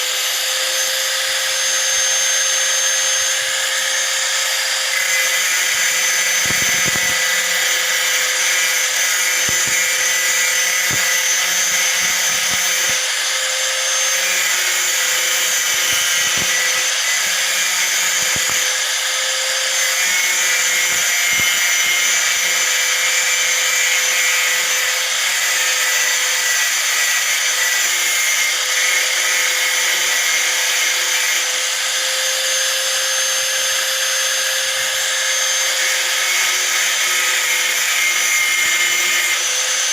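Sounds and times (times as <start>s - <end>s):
angle grinder grinding metal: 0.0s - 39.9s.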